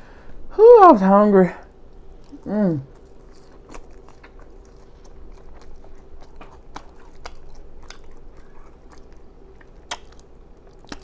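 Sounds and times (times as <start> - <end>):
chewing food: 1.8 - 11.0
wet lip-smacking clicks: 3.0 - 11.0.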